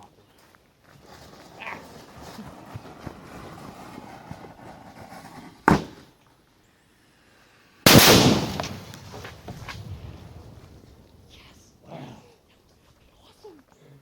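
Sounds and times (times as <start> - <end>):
loud explosion: 7.9 - 11.3.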